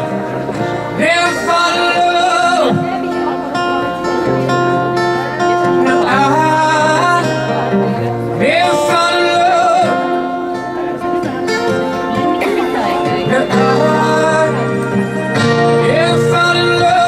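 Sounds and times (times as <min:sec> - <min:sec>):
acoustic guitar: 0:00.0 - 0:17.0
person singing: 0:08.4 - 0:10.5, 0:12.2 - 0:17.0.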